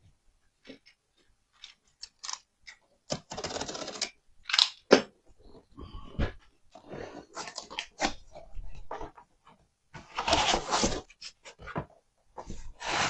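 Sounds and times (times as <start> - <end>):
cardboard scraping: 10.0 - 11.8, 12.4 - 13.0.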